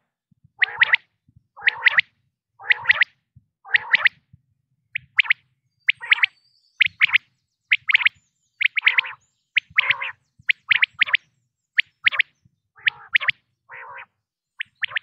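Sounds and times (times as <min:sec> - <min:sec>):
quail calling: 0:00.6 - 0:03.1, 0:05.0 - 0:15.0.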